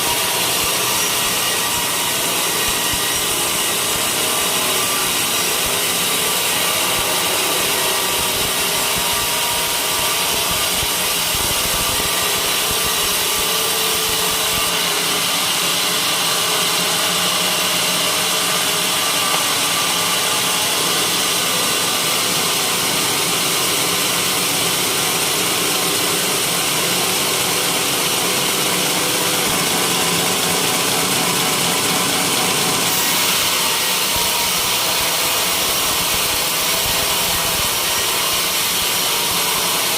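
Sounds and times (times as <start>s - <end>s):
sawmill blade sawing wood: 0.0s - 39.9s.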